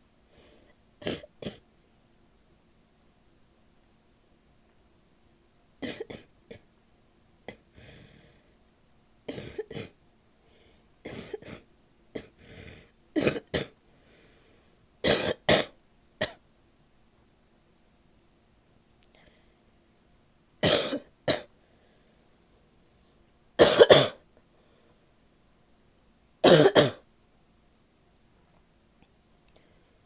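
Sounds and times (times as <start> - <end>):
woman coughing: 5.8 - 6.6, 9.3 - 10.0, 11.1 - 11.6, 13.2 - 13.8, 15.0 - 16.4, 20.6 - 21.5, 23.6 - 24.2, 26.4 - 27.0.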